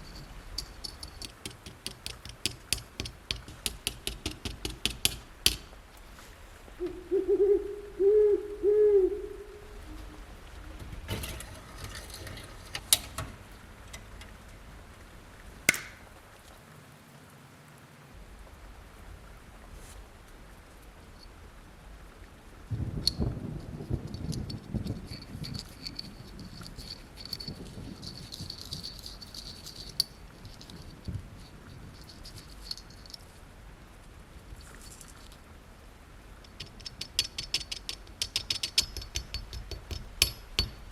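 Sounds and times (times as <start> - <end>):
sharp clicks of metal parts: 0.0 - 5.8, 11.1 - 14.2, 36.4 - 40.9
small metal parts clicking: 0.0 - 5.8, 24.0 - 31.2, 31.8 - 33.2, 36.4 - 40.9.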